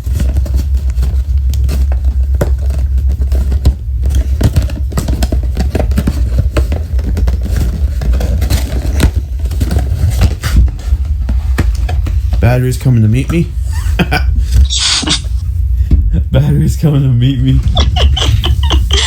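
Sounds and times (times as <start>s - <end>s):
packaging scraping and crinkling: 0.0s - 13.0s
low rumble: 0.0s - 19.0s.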